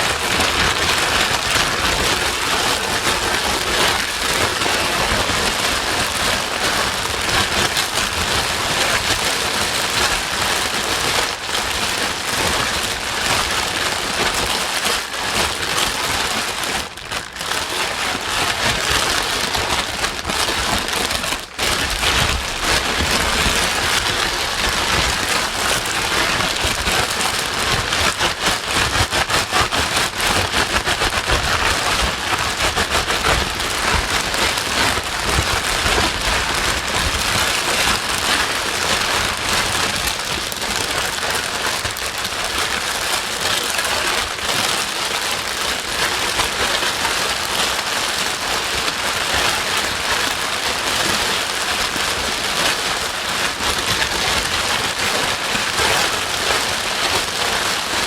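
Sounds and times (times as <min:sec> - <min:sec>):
rain-like white noise: 0:00.0 - 0:58.0.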